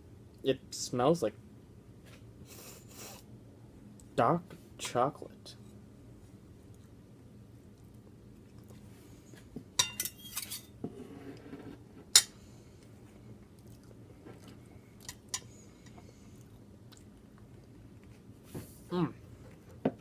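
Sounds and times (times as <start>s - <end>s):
fork clinking against plate: 9.8s - 10.7s.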